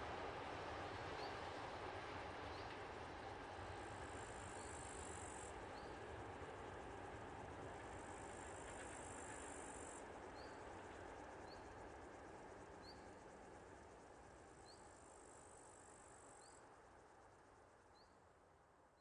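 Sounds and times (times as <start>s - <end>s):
train rumble: 0.0s - 12.9s.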